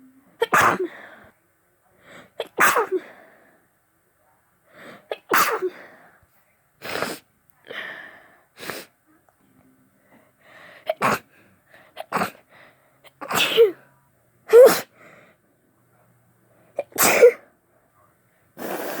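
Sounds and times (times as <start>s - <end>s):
wet sneezes: 0.4s - 0.9s, 2.4s - 3.1s, 5.1s - 5.8s, 13.2s - 13.8s, 14.5s - 14.9s, 16.8s - 17.4s, 18.6s - 19.0s.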